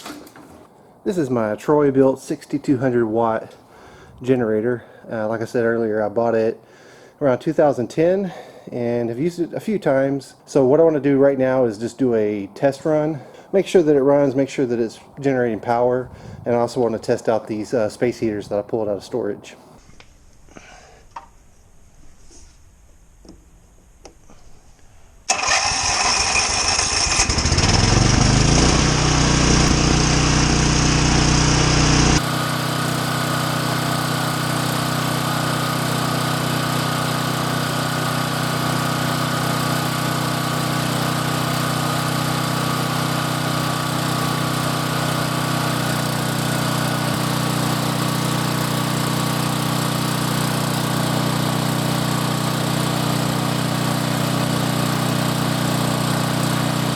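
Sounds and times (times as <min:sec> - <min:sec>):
generator engine running: 0:25.3 - 0:56.9.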